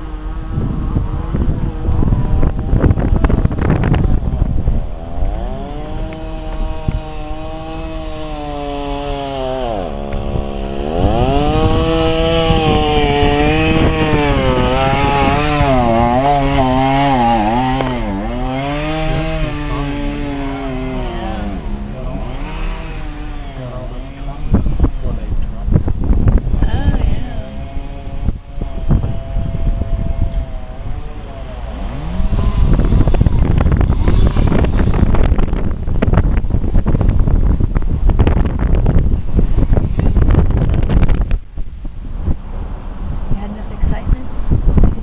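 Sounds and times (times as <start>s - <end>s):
loud rushing noise: 0.0s - 36.3s
chainsaw engine running: 1.0s - 25.7s, 26.4s - 36.2s.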